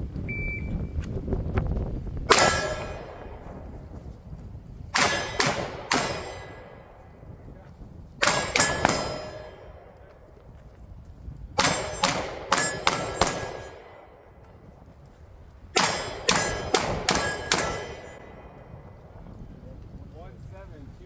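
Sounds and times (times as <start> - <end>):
pistol shots: 2.3 - 3.9, 5.0 - 7.1, 8.2 - 10.3, 11.6 - 14.5, 15.8 - 18.7
steel targets ringing: 2.3 - 4.0, 4.9 - 7.2, 8.2 - 10.4, 11.6 - 14.5, 15.8 - 18.9.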